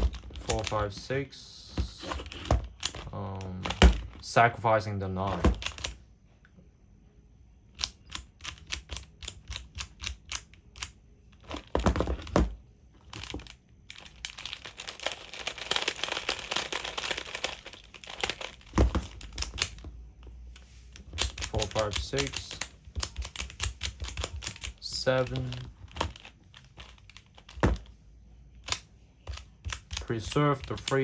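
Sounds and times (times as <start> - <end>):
plastic puzzle tiles clicking: 21.0 - 27.9.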